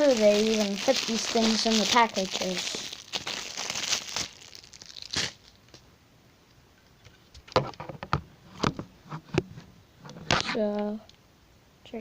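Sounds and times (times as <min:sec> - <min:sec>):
packaging crinkling: 0:00.0 - 0:05.8.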